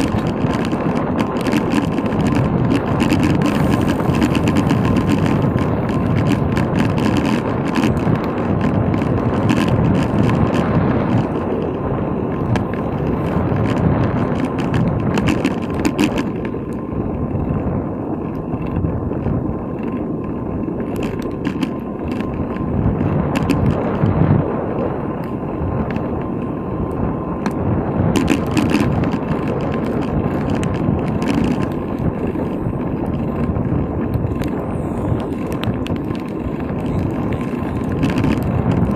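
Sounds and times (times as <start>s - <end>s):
bicycle tyre noise: 0.0s - 38.9s
bike rattles and clicks: 0.0s - 38.9s
wind rumbling on microphone: 0.0s - 38.9s.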